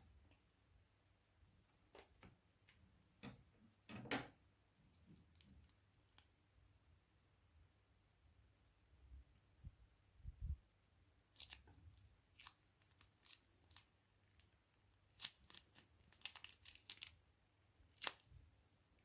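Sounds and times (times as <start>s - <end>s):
plastic bag crinkling: 11.4s - 11.7s, 12.3s - 17.2s.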